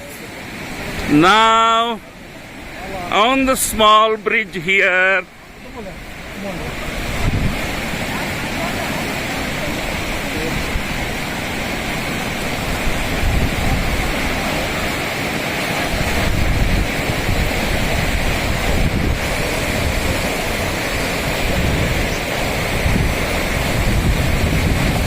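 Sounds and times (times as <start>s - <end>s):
mountain stream rushing: 0.0s - 25.0s
wind buffeting microphone: 6.0s - 25.0s.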